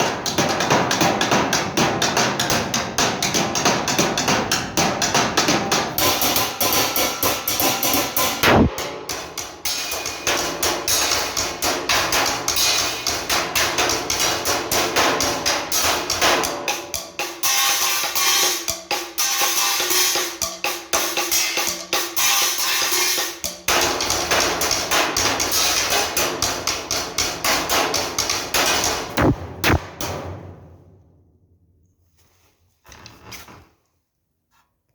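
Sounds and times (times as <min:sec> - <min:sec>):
fast metal drumming: 0:00.0 - 0:29.8
heavy cymbal crash: 0:06.0 - 0:09.0.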